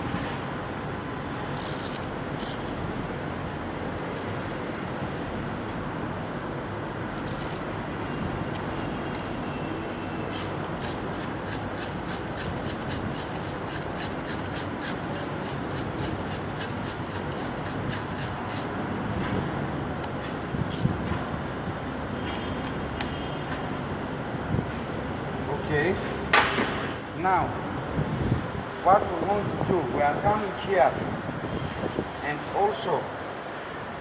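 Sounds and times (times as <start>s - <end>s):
steady background hum: 0.0s - 34.0s
hand ratchet clicking: 1.6s - 2.7s, 7.2s - 7.7s, 10.3s - 18.7s.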